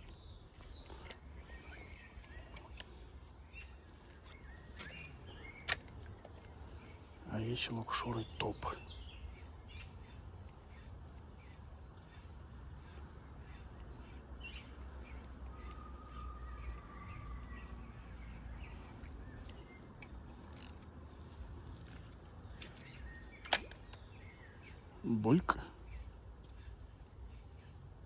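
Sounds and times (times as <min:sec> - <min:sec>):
birds chirping: 0:00.0 - 0:28.0
insects chirping: 0:00.9 - 0:28.0
sharp click: 0:04.7 - 0:06.1, 0:22.5 - 0:24.0.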